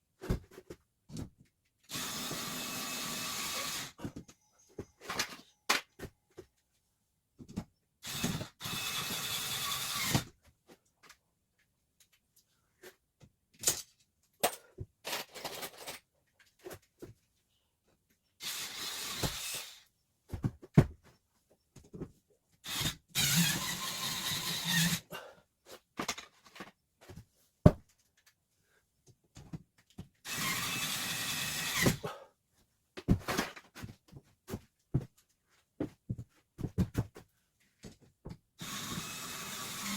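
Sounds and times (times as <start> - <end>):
power tool running: 22.7 - 25.0, 38.6 - 39.9.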